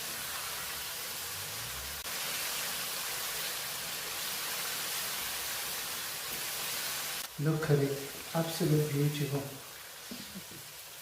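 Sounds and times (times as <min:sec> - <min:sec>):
food sizzling in hot oil: 0:00.0 - 0:11.0.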